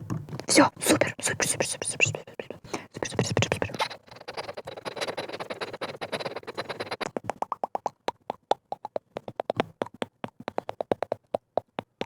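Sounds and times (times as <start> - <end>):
dense scratching: 1.2 - 7.0.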